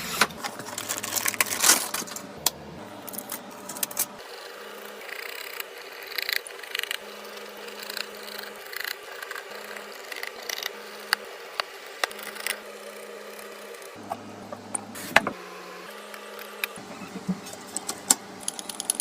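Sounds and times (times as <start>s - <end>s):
computer parts rubbing and scraping: 0.0s - 2.3s, 2.9s - 10.7s.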